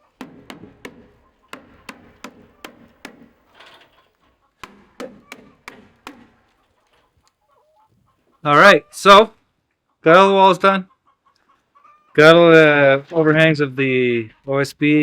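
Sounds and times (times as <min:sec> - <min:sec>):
hammer driving nails into wood: 0:00.0 - 0:03.9, 0:04.6 - 0:06.6.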